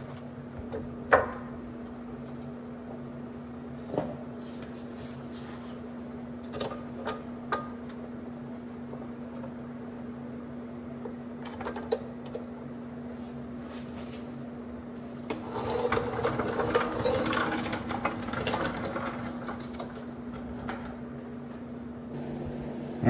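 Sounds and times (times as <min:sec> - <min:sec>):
steady hum: 0:21.4 - 0:23.0.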